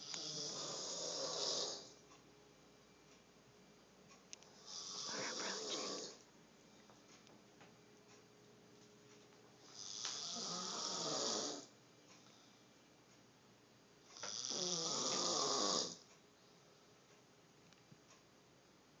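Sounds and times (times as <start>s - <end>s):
person snoring: 0.0s - 1.9s, 4.6s - 6.2s, 9.7s - 11.7s, 14.2s - 16.0s.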